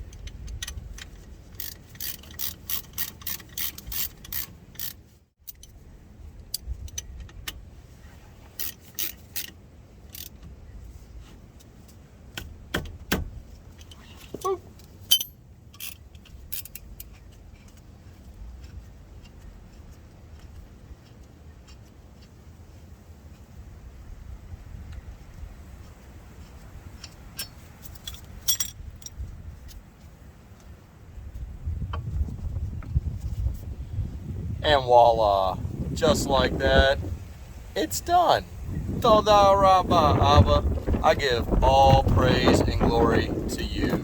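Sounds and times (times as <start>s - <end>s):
metallic clicks of hand tools: 0.0s - 5.8s, 8.6s - 9.5s, 10.1s - 10.5s, 14.8s - 17.8s.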